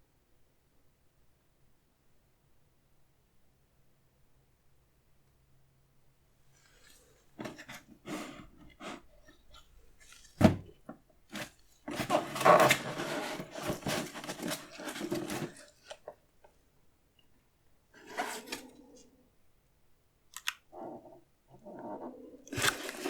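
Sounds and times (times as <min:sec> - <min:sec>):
packaging rustling: 0:11.3 - 0:16.1, 0:22.5 - 0:23.0.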